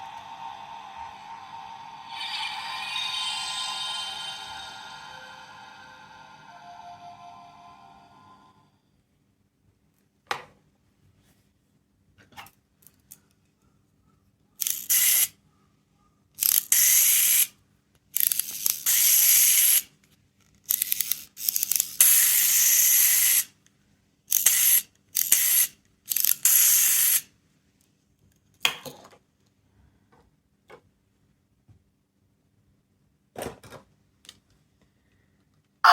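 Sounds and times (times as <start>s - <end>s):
toy hissing bursts: 14.6s - 15.3s, 16.4s - 17.5s, 18.2s - 19.8s, 21.5s - 23.5s, 24.3s - 27.3s.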